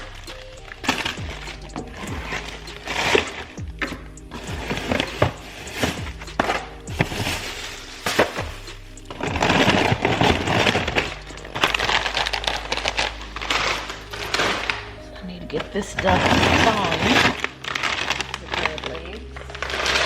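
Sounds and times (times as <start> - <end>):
background music: 0.0 - 20.0
plastic rustling and crinkling: 9.2 - 20.0.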